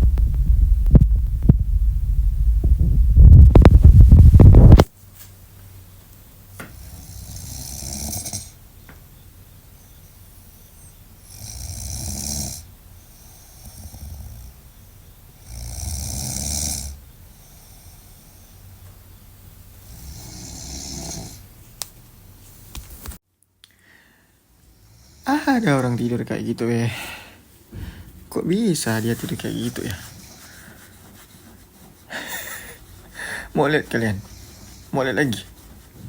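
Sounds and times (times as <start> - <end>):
person snoring: 6.9 - 8.6, 11.3 - 14.6, 15.4 - 18.4, 19.8 - 21.5.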